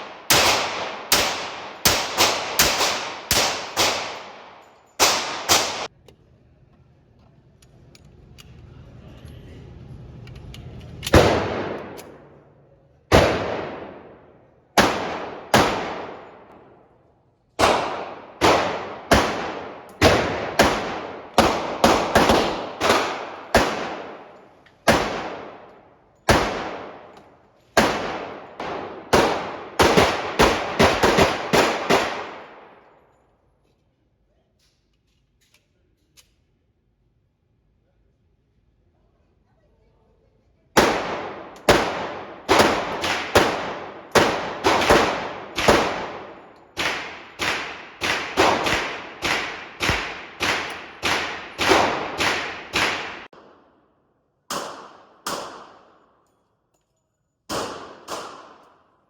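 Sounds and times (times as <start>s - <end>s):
echoing gunshots: 0.0s - 5.9s, 11.1s - 12.4s, 13.1s - 16.9s, 17.6s - 33.0s, 40.8s - 56.2s, 57.5s - 58.9s.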